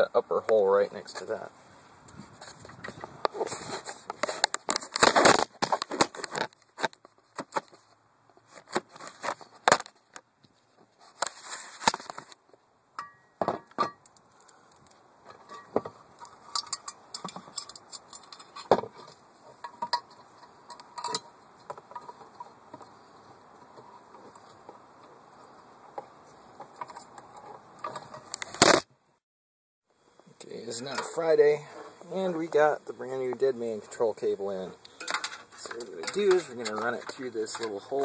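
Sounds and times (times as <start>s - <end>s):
metallic clinks and scrapes: 15.3s - 23.1s, 34.9s - 38.0s.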